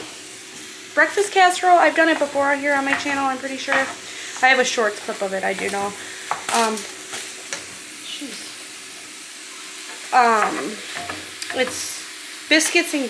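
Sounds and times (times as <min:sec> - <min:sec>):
sausage sizzling in a frying pan: 0:00.0 - 0:13.0
person speaking: 0:10.2 - 0:13.0.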